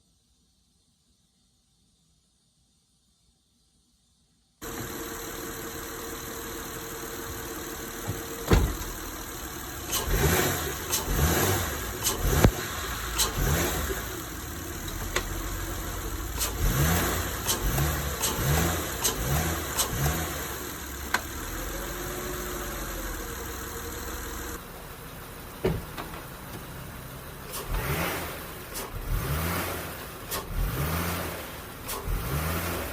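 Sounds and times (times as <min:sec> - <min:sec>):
car engine idling and revving: 0:04.6 - 0:32.9
sharp mechanical clunks: 0:08.0 - 0:09.1.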